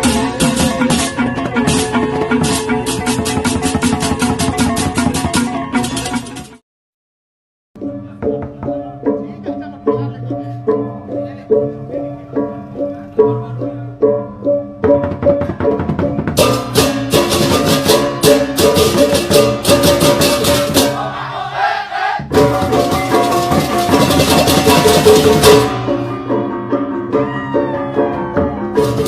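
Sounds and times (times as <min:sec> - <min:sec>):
rattle-like percussion: 0:00.0 - 0:06.6, 0:15.0 - 0:21.0, 0:22.3 - 0:25.8
pitched musical notes: 0:07.8 - 0:21.4, 0:22.3 - 0:29.0.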